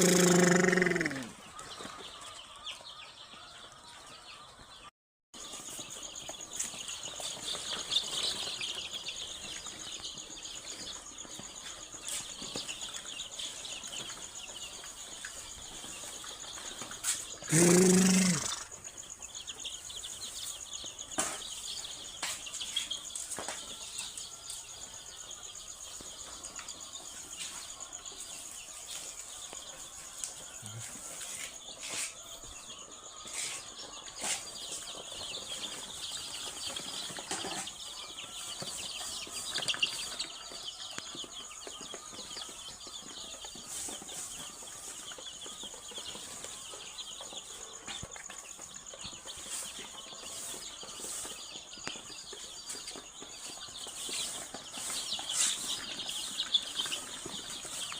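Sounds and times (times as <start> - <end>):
chicks chirping and clucking: 0.0 - 57.9.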